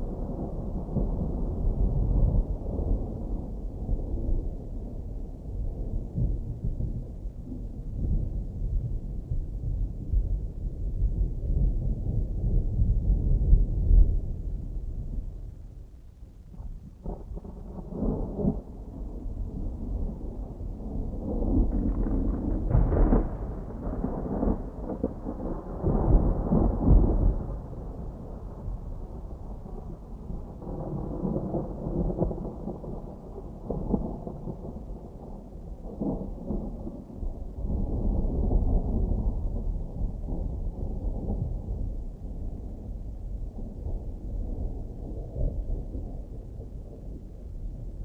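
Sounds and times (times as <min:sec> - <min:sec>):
distant thunder rumbling: 0:00.0 - 0:15.9, 0:16.5 - 0:48.0
rain pattering: 0:00.0 - 0:48.0.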